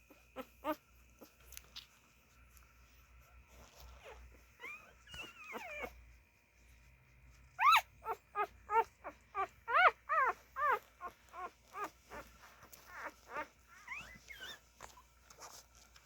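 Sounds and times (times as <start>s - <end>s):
puppies squeaking and whimpering: 3.6s - 6.0s, 7.6s - 15.9s.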